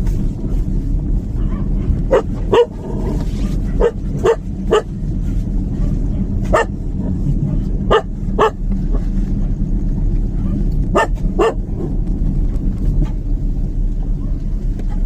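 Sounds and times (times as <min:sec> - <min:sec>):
steady low rumble: 0:00.0 - 0:15.0
dog barking: 0:01.4 - 0:04.9, 0:05.7 - 0:06.8, 0:07.4 - 0:09.0, 0:10.4 - 0:11.9.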